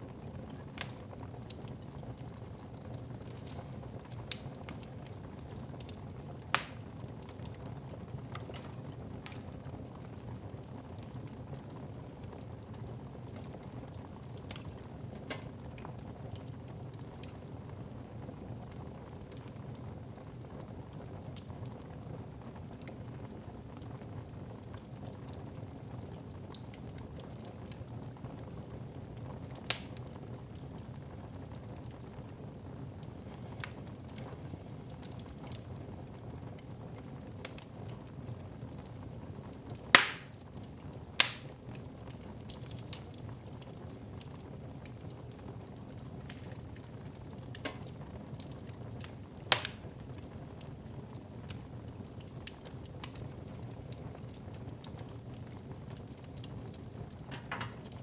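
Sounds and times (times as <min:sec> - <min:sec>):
wood fire crackling: 0:00.0 - 0:58.0
sharp pops from fire: 0:00.1 - 0:01.6, 0:03.2 - 0:05.2, 0:05.8 - 0:07.6, 0:08.3 - 0:09.7, 0:14.4 - 0:15.9, 0:29.5 - 0:30.2, 0:33.3 - 0:34.4, 0:39.7 - 0:43.2, 0:46.2 - 0:50.3, 0:56.6 - 0:58.0
fire hissing: 0:00.1 - 0:05.5, 0:06.5 - 0:06.9, 0:29.5 - 0:30.8, 0:39.7 - 0:42.6, 0:44.9 - 0:51.2.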